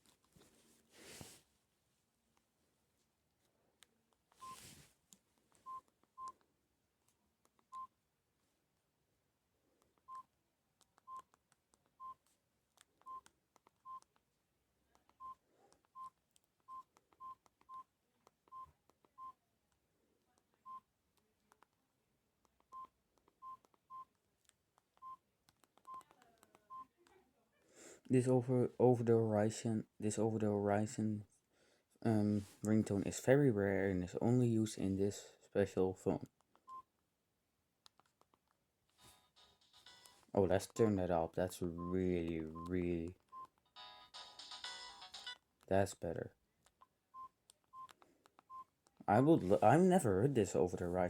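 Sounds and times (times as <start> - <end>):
keypad beeping: 4.4 - 4.6, 39.0 - 40.2, 41.8 - 45.4, 47.2 - 48.7.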